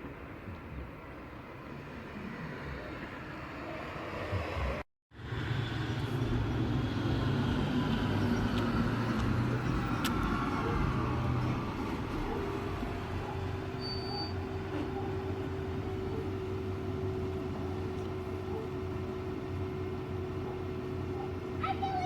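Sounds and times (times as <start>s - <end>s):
traffic noise: 0.0s - 22.0s
low engine hum: 4.2s - 13.8s.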